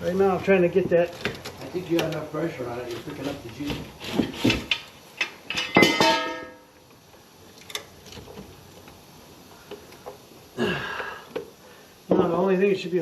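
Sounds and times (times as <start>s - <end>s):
sharp metallic clang: 5.5s - 6.7s.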